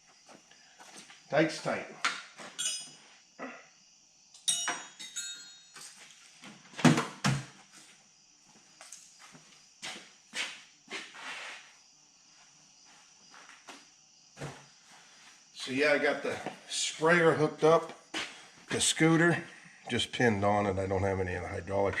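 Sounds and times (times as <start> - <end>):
short metallic rings: 2.6 - 3.1, 4.4 - 6.0
tools clicking and knocking: 4.4 - 5.5.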